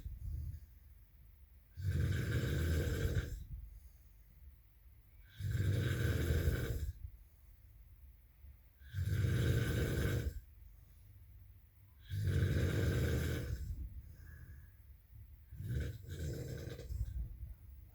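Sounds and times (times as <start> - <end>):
quiet breathing: 0.0 - 17.9
person snoring: 1.8 - 3.4, 5.3 - 7.0, 8.8 - 10.4, 12.0 - 13.8, 15.6 - 17.1.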